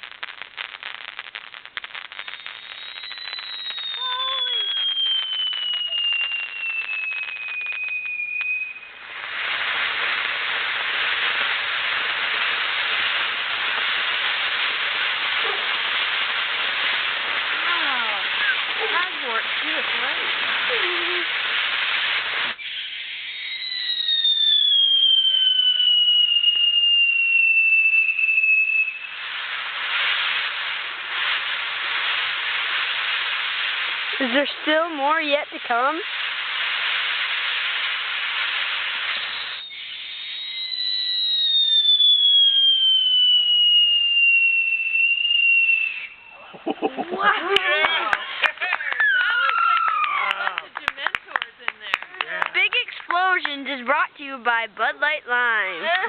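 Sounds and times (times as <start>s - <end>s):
firework whistle: 0.0s - 54.6s
fireworks crackling: 0.0s - 56.0s
steady hiss: 8.6s - 23.3s, 28.8s - 40.4s, 41.6s - 56.0s.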